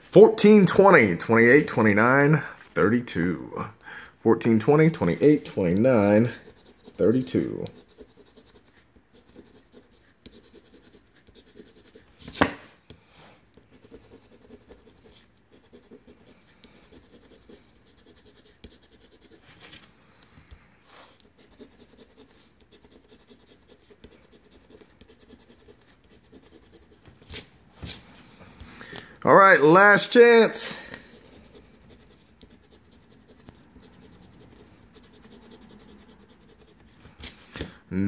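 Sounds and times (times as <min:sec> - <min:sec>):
lottery ticket being scratched: 0:04.6 - 0:12.1, 0:13.8 - 0:19.4, 0:21.3 - 0:27.5, 0:30.8 - 0:37.4.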